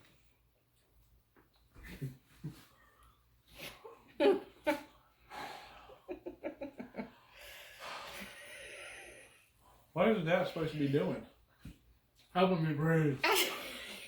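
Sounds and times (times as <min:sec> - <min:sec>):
man breathing hard through mouth: 0:05.2 - 0:06.1, 0:07.2 - 0:09.8
long airy exhale: 0:07.4 - 0:09.5.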